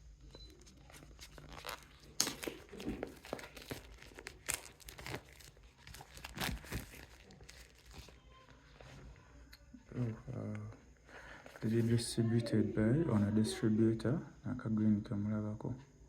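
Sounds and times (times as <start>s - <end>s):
packaging crinkling and rustling: 0.5s - 9.1s.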